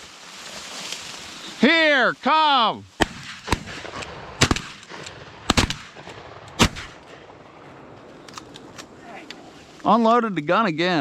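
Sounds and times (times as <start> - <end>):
shotgun shots: 3.0 - 7.4.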